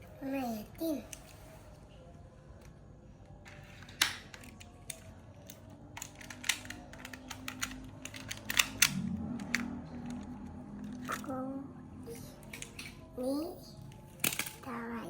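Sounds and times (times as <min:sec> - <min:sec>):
plastic toy parts clicking: 0:03.4 - 0:11.3, 0:12.4 - 0:13.0, 0:13.9 - 0:14.7.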